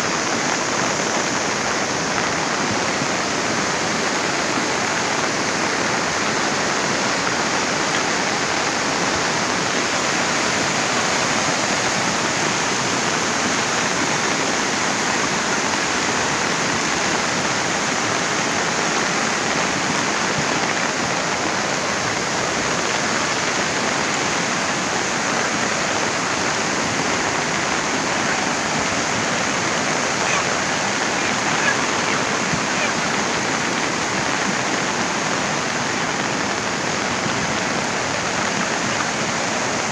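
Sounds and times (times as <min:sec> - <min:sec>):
floodwater rushing: 0:00.0 - 0:39.9.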